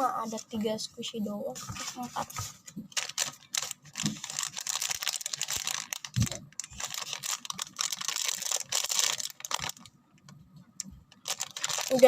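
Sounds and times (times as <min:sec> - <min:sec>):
plastic packaging crinkling: 0:02.8 - 0:12.0.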